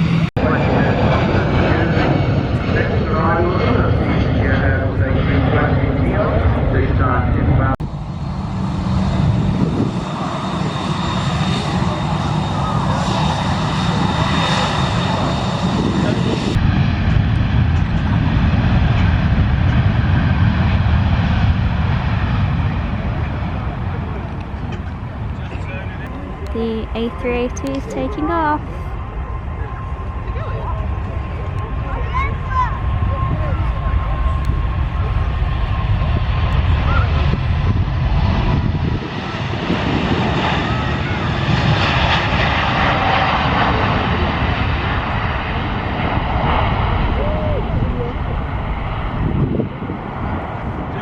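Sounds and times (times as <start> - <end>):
jet engines roaring: 0.0 - 51.0.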